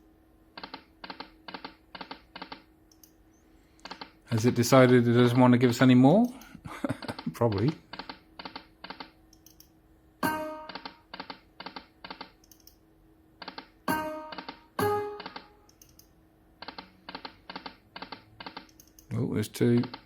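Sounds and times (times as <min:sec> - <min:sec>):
faint steady hum: 0:00.0 - 0:20.0
slot machine reels clicking: 0:10.2 - 0:12.7, 0:13.4 - 0:16.0.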